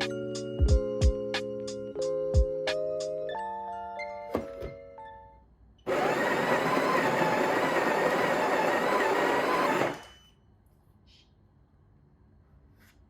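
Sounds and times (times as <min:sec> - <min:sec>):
small appliance motor whirring: 0:05.9 - 0:10.2.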